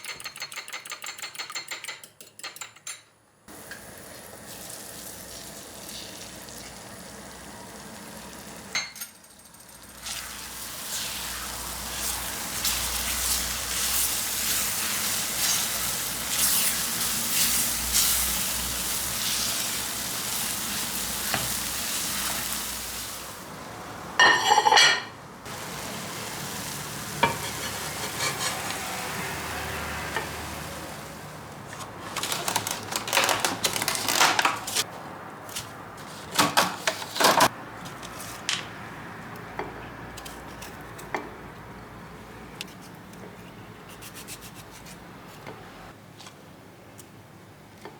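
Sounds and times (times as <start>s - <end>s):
food sizzling in a frying pan: 3.5s - 8.7s, 10.0s - 23.9s, 25.5s - 31.4s
utensil scraping a pan: 27.2s - 29.0s.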